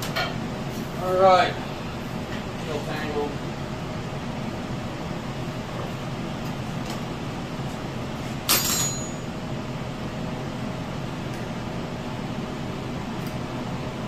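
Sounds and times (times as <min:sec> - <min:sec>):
shop hum: 0:00.0 - 0:14.0
sharp metallic clink: 0:08.5 - 0:09.3.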